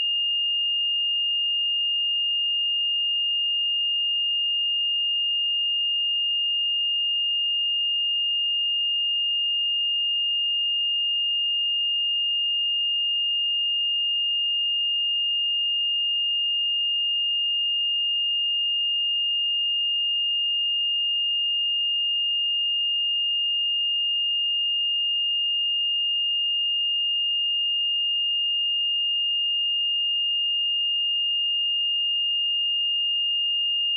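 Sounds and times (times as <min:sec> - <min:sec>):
high-pitched sine wave test tone: 0:17.0 - 0:33.9.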